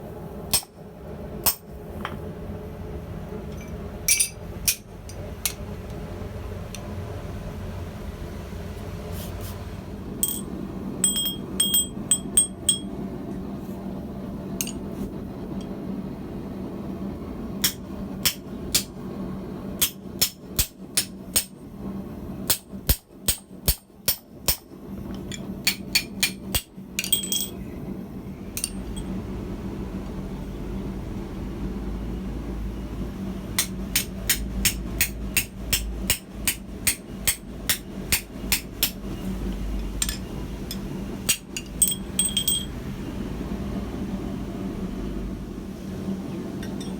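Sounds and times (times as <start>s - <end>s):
steady low hum: 0.0s - 46.9s
anvil ringing: 4.1s - 4.8s.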